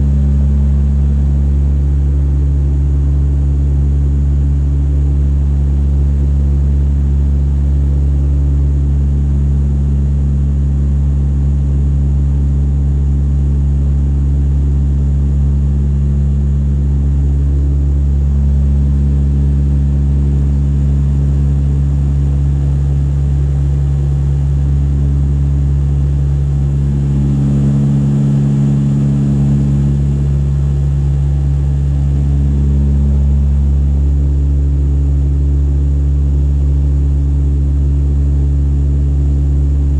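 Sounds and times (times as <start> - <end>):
turboprop engines droning: 16.3 - 39.9.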